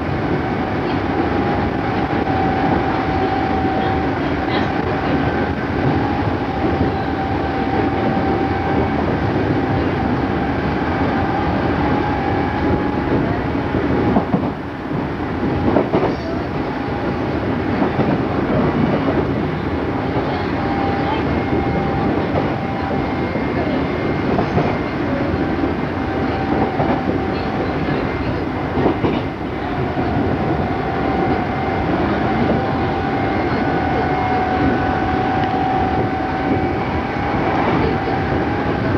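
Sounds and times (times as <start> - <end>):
train wheels rumbling on rails: 0.0 - 38.9
rail-joint clicks: 15.4 - 19.4, 31.2 - 36.7.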